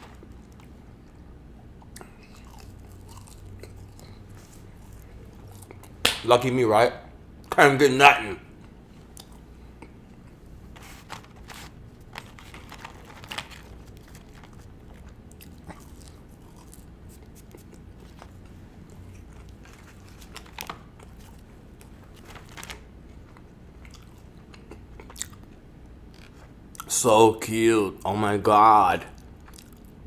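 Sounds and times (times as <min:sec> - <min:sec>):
person chewing crisp food: 0:00.1 - 0:06.0, 0:09.0 - 0:22.2, 0:23.2 - 0:26.9, 0:29.2 - 0:30.0.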